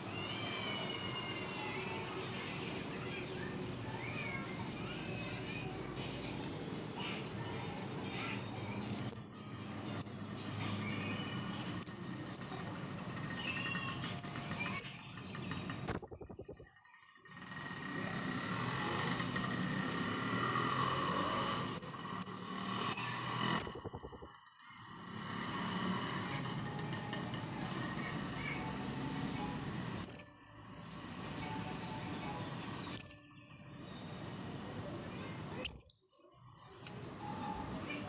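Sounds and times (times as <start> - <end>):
parrot rapid trill: 9.0 - 10.4, 11.8 - 12.7, 13.3 - 15.2, 15.8 - 16.9, 21.7 - 24.5, 30.0 - 30.5, 32.8 - 33.5, 35.6 - 36.2
parrot high-pitched calls: 10.0 - 10.3, 11.8 - 12.6, 13.4 - 15.0, 15.9 - 16.7, 21.8 - 24.4, 30.0 - 30.4.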